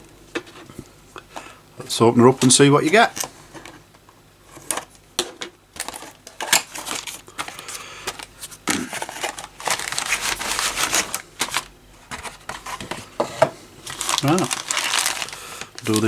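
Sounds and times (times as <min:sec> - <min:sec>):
cardboard box handling: 0:05.8 - 0:16.0.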